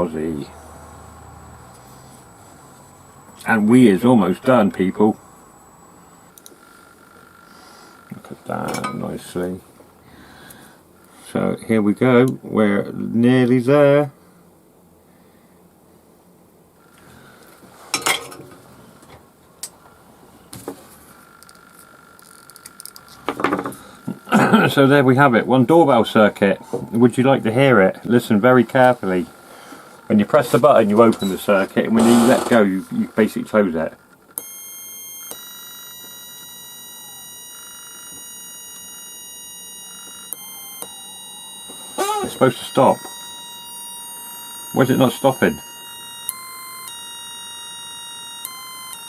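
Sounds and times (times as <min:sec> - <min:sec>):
faint steady high tone: 0:00.0 - 0:09.6, 0:21.0 - 0:31.9, 0:32.6 - 0:49.0.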